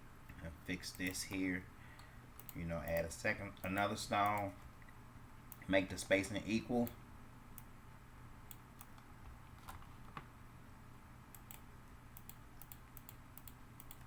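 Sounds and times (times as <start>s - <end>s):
low steady hum: 0.0s - 14.0s
keyboard and mouse clicks: 12.2s - 14.0s.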